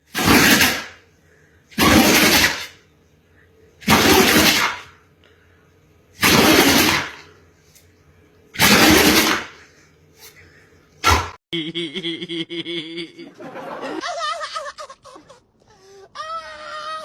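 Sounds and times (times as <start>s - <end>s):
dog sneezing: 0.1s - 1.0s, 1.7s - 2.8s, 3.8s - 4.9s, 6.2s - 7.3s, 8.6s - 10.4s, 11.0s - 11.4s.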